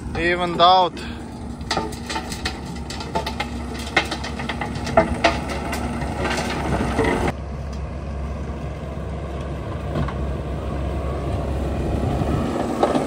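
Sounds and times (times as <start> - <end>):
diesel engine running: 0.0 - 13.0
rattling clatter: 1.5 - 7.3.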